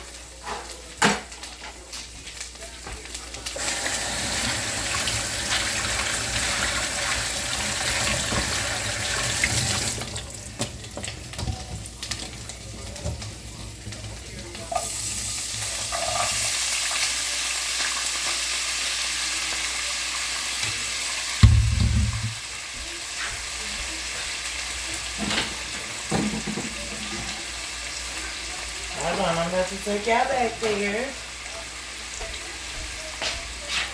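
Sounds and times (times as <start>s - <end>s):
food sizzling in a hot pan: 0.0s - 33.9s
loud thump: 21.4s - 22.4s.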